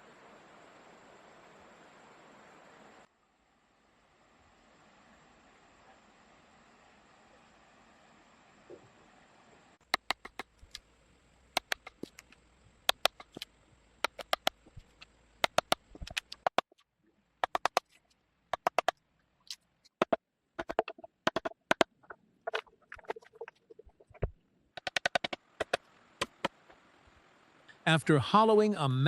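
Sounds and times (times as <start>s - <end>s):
hand tool knocking on wood: 20.0s - 21.9s, 22.5s - 26.6s.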